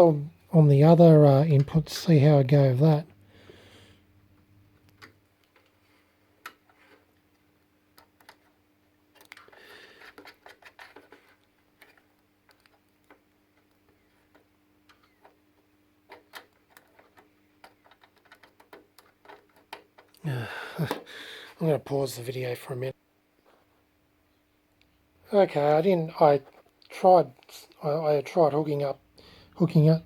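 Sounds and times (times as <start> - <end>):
faint steady hum: 0.0 - 30.0
rustling: 4.7 - 20.1.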